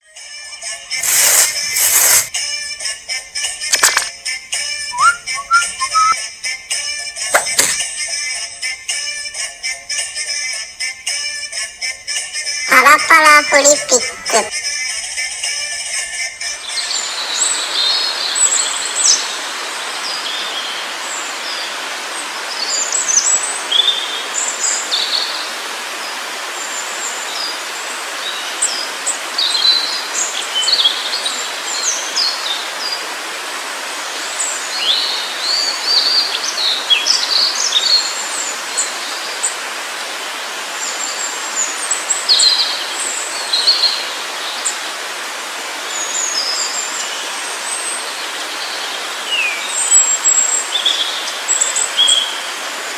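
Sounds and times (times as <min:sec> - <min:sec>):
birds chirping and singing: 0:05.0 - 0:06.2
flowing water rushing: 0:16.9 - 0:52.9.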